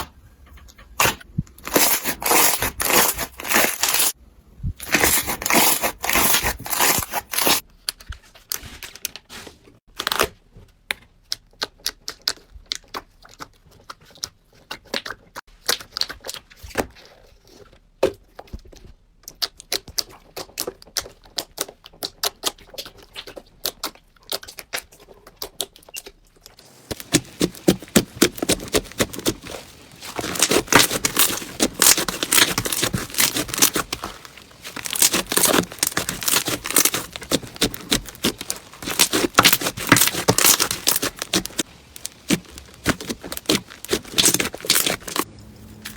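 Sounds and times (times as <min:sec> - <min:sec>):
crunchy slime crackling and popping: 0:01.0 - 0:04.2, 0:04.8 - 0:07.6, 0:19.3 - 0:45.9.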